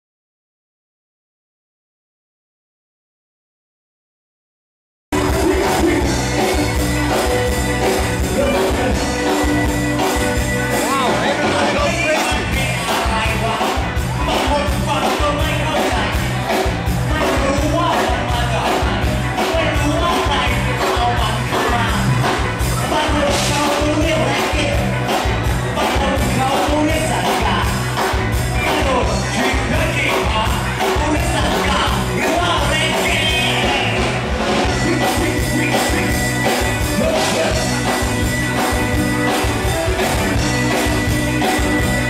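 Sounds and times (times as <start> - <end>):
song with sung vocal: 5.2 - 38.1.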